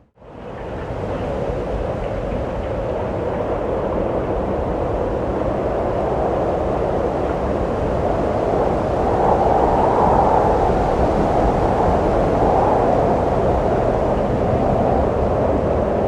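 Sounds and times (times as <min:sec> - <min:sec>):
wind blowing: 0:03.2 - 0:16.0.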